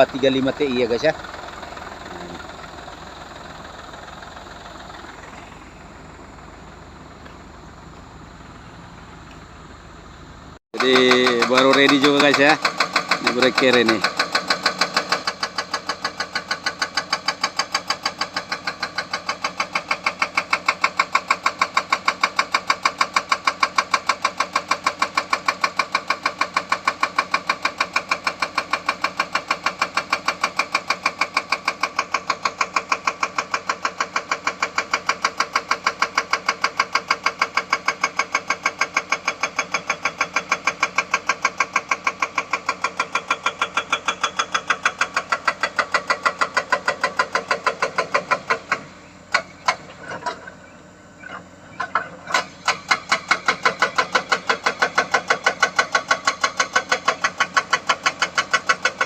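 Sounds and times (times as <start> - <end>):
excavator engine running: 0.0 - 59.0
hydraulic breaker hammering rock: 10.8 - 50.6, 51.7 - 59.0.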